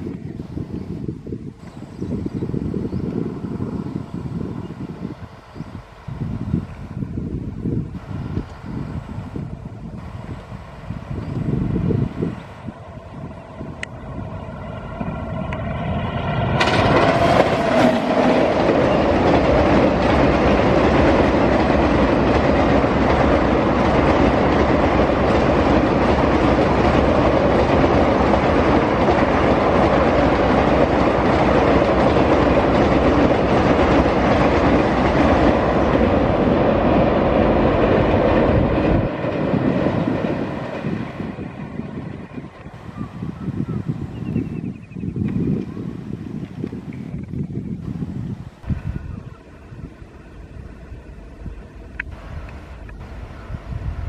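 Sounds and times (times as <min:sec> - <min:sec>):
train wheels clattering on bridge: 0:15.0 - 0:42.0.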